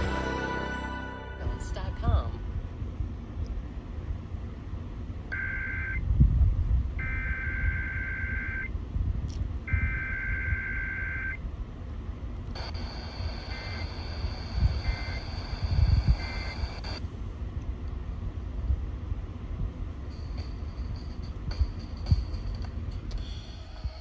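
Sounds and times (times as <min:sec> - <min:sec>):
steady electronic alert tone: 0:00.0 - 0:02.8
low rumbling background: 0:00.0 - 0:05.3.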